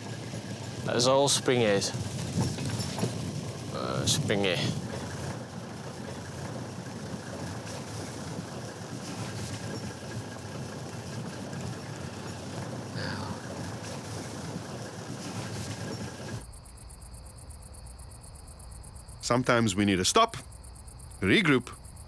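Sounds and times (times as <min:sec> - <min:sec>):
vehicle engine rumble: 0:00.0 - 0:16.7
crickets chirping: 0:00.0 - 0:22.0.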